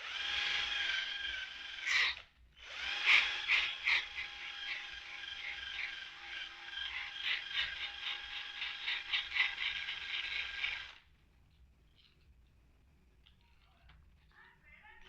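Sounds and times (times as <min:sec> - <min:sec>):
power tool whining on metal: 0:00.0 - 0:11.0.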